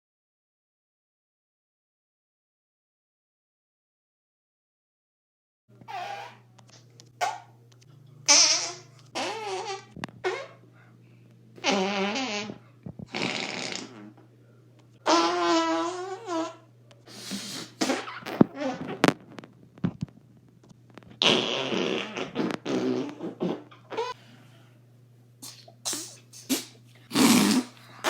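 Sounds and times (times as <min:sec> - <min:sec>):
faint steady hum: 0:05.7 - 0:28.0
arm fart noises: 0:08.3 - 0:10.6, 0:11.6 - 0:14.3, 0:15.0 - 0:20.1, 0:21.0 - 0:24.2, 0:25.9 - 0:28.0.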